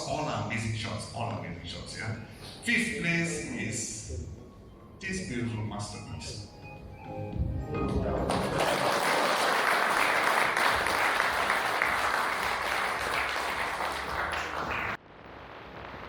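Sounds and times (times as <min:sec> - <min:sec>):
audience applauding: 0:08.3 - 0:15.0.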